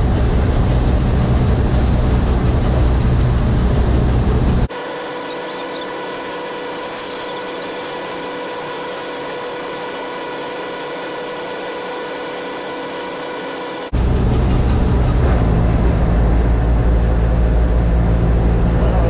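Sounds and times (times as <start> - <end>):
machine whine: 4.6 - 16.5.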